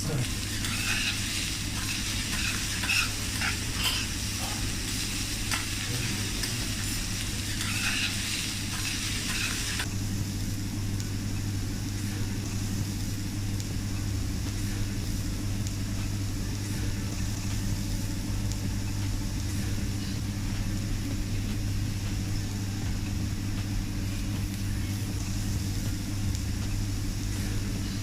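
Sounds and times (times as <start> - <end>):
food sizzling on a griddle: 0.0 - 28.0
steady low hum: 0.0 - 28.0
metal spatula scraping and tapping: 7.5 - 9.6.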